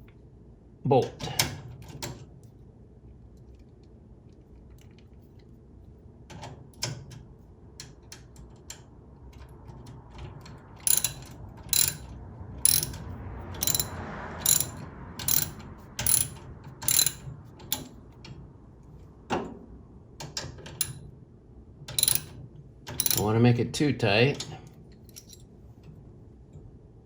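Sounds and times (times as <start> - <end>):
ratchet wrench clicking: 10.8 - 13.0, 13.6 - 18.0, 20.8 - 21.0, 22.0 - 22.3, 23.0 - 23.3.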